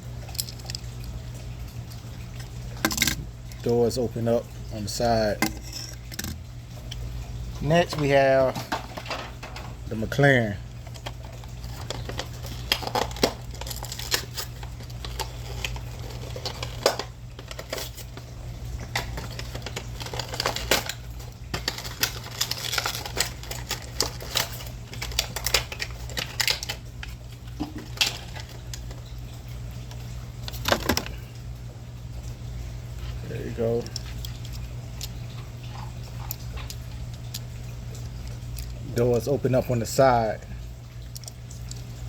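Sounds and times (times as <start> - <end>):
low hum: 1.4 - 7.6.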